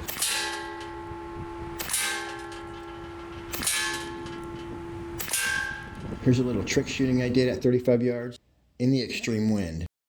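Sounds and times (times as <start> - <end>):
air rifle shots: 0.0 - 0.8, 1.7 - 2.6, 3.4 - 4.4, 5.1 - 6.1
metallic ringing tone: 0.2 - 6.0.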